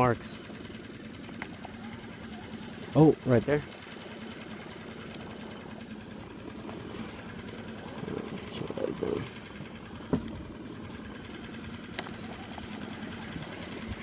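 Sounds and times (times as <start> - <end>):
outboard motor running: 0.0 - 14.0
muffled knocking: 10.0 - 10.5.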